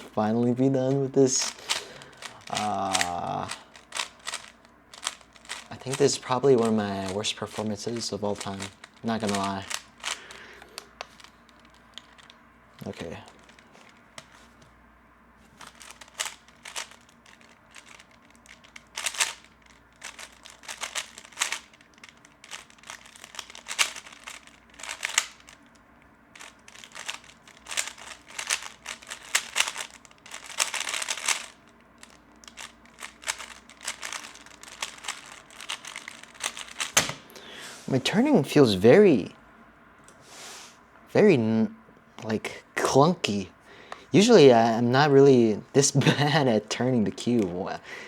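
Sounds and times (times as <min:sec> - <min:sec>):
plastic cube clicking: 0:01.5 - 0:12.4, 0:15.6 - 0:25.6, 0:26.4 - 0:37.3.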